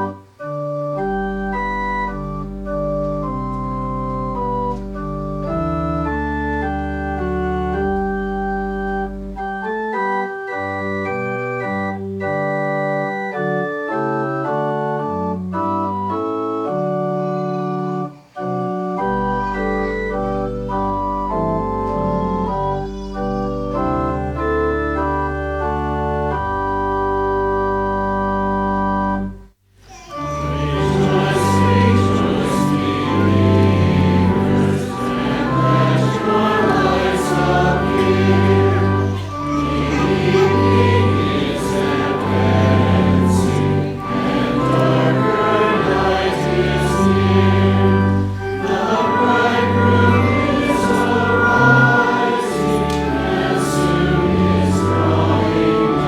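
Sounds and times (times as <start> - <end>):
church organ chords: 0.0 - 29.5, 30.2 - 56.0
voices singing: 30.1 - 56.0.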